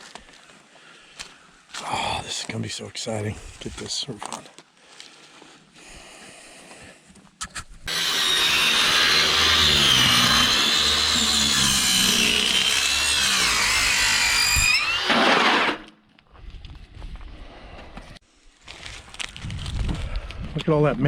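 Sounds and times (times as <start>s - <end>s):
power saw cutting metal: 7.9s - 15.9s.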